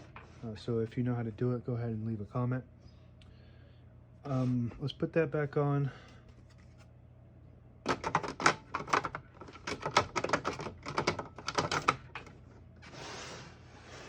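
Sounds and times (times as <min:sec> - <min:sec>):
typewriter keys clacking: 0:07.9 - 0:12.2.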